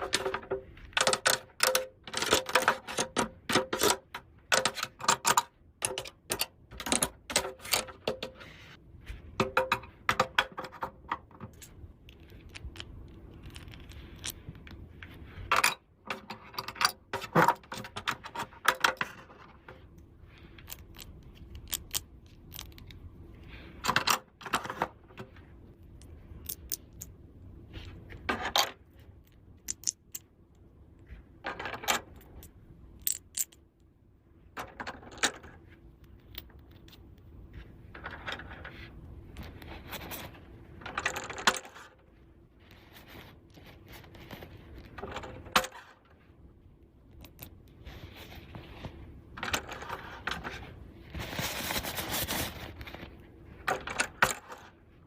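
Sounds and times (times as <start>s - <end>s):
toy pieces clicking and clattering: 0.0s - 8.3s, 10.1s - 14.8s, 20.4s - 23.0s, 26.0s - 27.2s, 28.3s - 30.3s, 31.4s - 33.7s
scraping or rustling: 34.7s - 46.4s, 47.3s - 54.9s.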